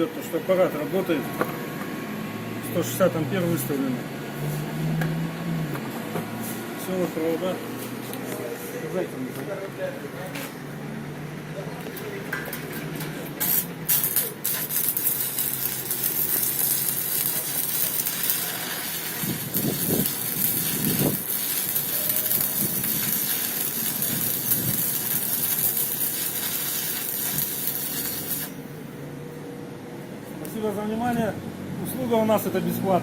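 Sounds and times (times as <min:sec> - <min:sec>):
welding arc crackling and hissing: 0:13.2 - 0:28.7.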